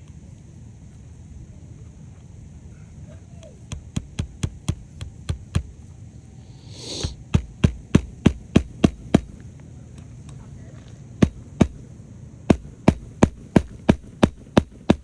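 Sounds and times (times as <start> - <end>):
rustling hiss: 0.0 - 14.6
hammer driving nails into shingles: 12.5 - 15.0.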